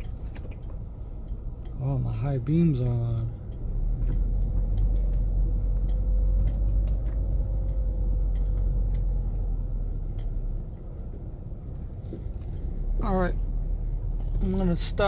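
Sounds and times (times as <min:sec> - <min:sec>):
light ticks: 0:00.0 - 0:09.4
car engine and road noise: 0:00.0 - 0:15.0.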